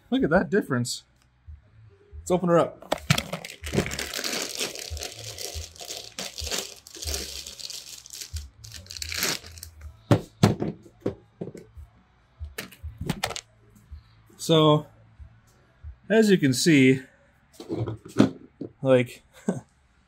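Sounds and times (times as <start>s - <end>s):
packaging torn and crinkled: 3.0s - 9.8s.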